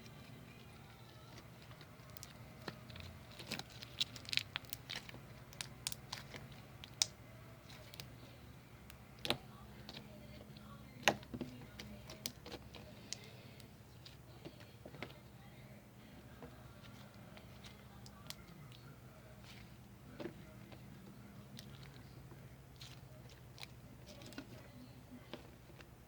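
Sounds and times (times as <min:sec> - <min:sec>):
faint steady hum: 0:00.0 - 0:26.0
slime crackling and popping: 0:01.9 - 0:08.1.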